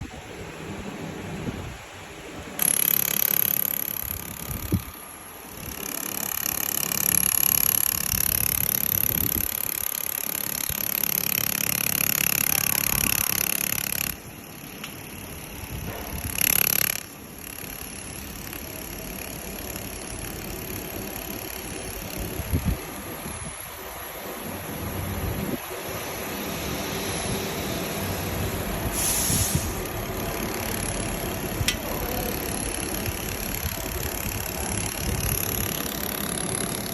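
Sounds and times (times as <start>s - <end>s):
mechanical whine: 0.0s - 36.9s
welding machine high whine: 2.6s - 36.9s
loud hiss: 22.3s - 35.8s.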